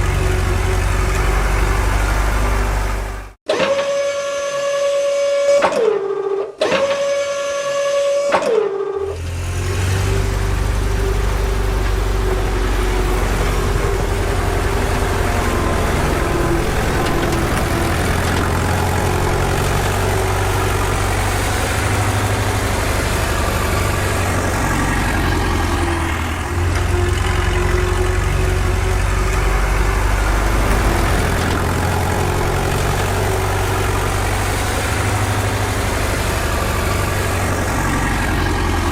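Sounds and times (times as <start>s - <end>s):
engine idling: 0.0s - 3.4s, 9.2s - 38.9s.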